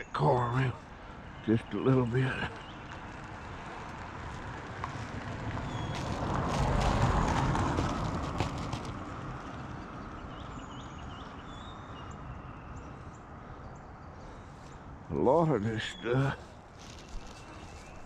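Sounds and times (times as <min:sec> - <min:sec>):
tyres crackling on road: 0:00.0 - 0:18.0
faint bird chirps: 0:10.0 - 0:18.0.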